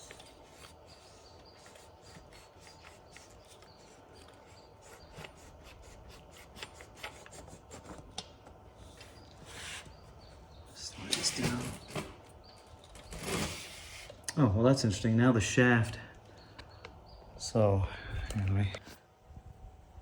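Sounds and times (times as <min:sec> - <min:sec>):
rubbing and scraping: 0:00.0 - 0:08.2, 0:13.0 - 0:14.1.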